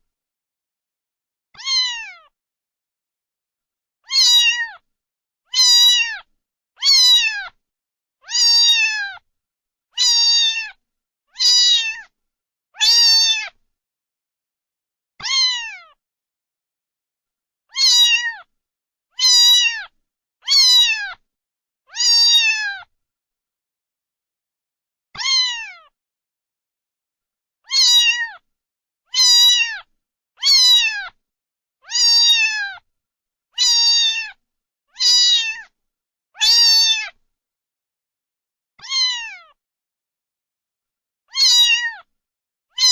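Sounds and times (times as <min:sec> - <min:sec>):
cat meowing: 0:01.6 - 0:02.3, 0:04.0 - 0:04.8, 0:05.5 - 0:07.6, 0:08.2 - 0:09.2, 0:10.0 - 0:12.1, 0:12.8 - 0:13.6, 0:15.2 - 0:16.0, 0:17.7 - 0:18.5, 0:19.2 - 0:21.2, 0:21.9 - 0:22.9, 0:25.2 - 0:26.0, 0:27.6 - 0:28.4, 0:29.1 - 0:31.2, 0:31.8 - 0:32.8, 0:33.6 - 0:35.8, 0:36.4 - 0:37.2, 0:38.8 - 0:39.6, 0:41.3 - 0:42.1.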